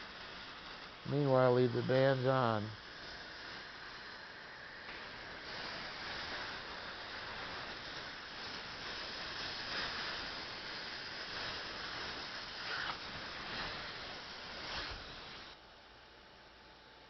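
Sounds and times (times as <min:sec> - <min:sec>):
dental air-water syringe hiss: 0:00.0 - 0:15.6
dental suction: 0:05.4 - 0:15.5.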